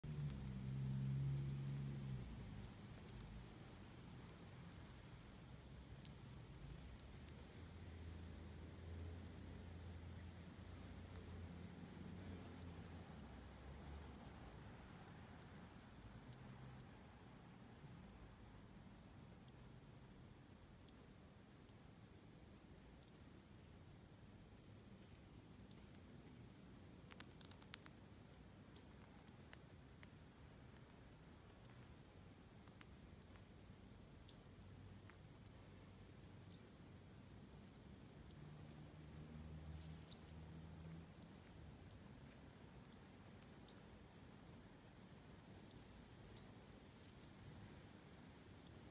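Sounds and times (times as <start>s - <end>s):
chipmunk chirping: 1.4s - 13.5s, 14.1s - 17.1s, 17.7s - 18.4s, 19.4s - 19.8s, 20.8s - 22.0s, 23.0s - 23.5s, 25.5s - 26.1s, 27.0s - 37.0s, 38.2s - 38.7s, 40.1s - 40.3s, 41.2s - 41.6s, 42.8s - 44.0s, 45.5s - 46.6s, 48.6s - 48.9s.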